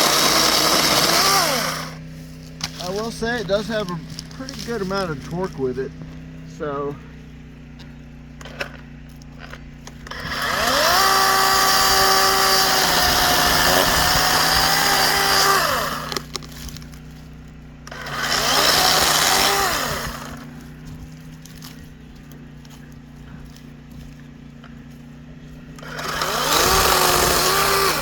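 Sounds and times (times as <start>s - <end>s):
electric chainsaw cutting wood: 0.0s - 5.7s, 8.4s - 22.4s, 25.5s - 28.0s.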